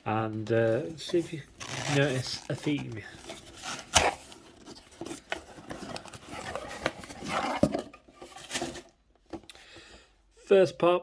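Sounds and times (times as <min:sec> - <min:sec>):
packaging rustling and scraping: 0:00.4 - 0:09.0.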